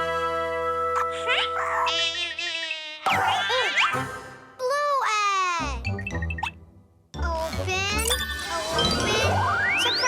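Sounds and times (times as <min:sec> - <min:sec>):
cartoon background music: 0:00.0 - 0:10.0.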